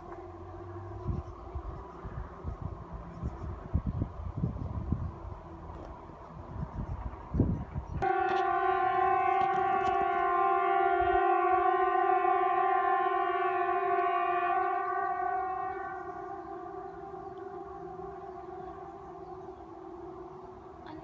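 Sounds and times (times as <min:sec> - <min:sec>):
steady single-pitched tone: 0:08.0 - 0:21.0.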